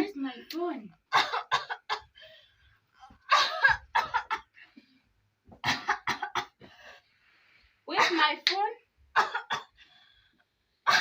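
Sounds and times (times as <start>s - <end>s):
woman coughing: 1.1s - 2.2s, 3.3s - 4.5s, 5.6s - 6.7s, 8.0s - 8.4s, 9.2s - 9.8s.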